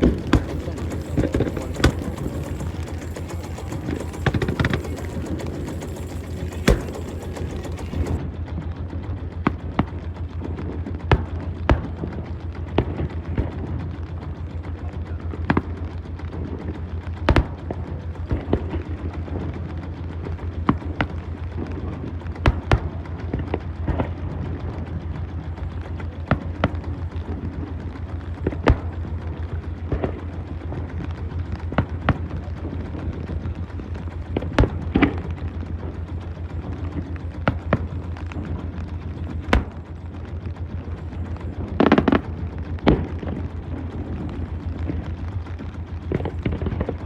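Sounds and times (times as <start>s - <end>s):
fireworks bangs: 0.0s - 8.2s.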